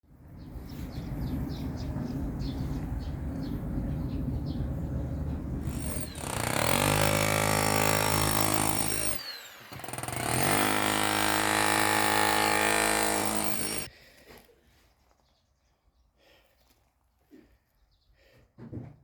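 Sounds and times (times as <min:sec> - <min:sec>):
power tool motor whining: 0:05.6 - 0:13.9.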